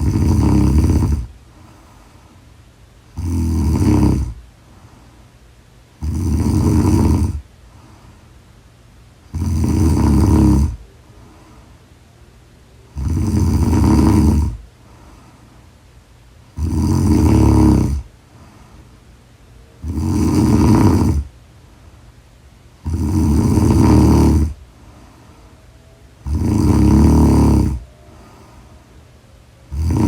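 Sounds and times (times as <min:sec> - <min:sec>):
woman snoring loudly: 0:00.0 - 0:01.3, 0:03.1 - 0:04.4, 0:06.0 - 0:07.4, 0:09.3 - 0:10.8, 0:12.9 - 0:14.6, 0:16.6 - 0:18.1, 0:19.8 - 0:21.3, 0:22.8 - 0:24.6, 0:26.2 - 0:27.9, 0:29.7 - 0:30.0.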